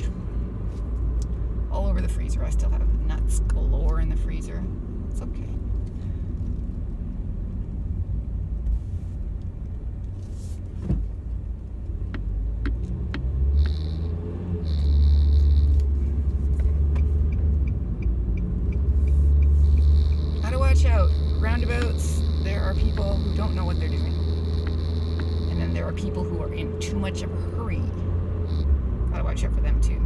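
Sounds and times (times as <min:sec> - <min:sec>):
car engine and road rumble: 0:00.0 - 0:30.0
turn signal ticking: 0:11.3 - 0:30.0
sharp clicks: 0:12.1 - 0:14.1, 0:14.7 - 0:25.7.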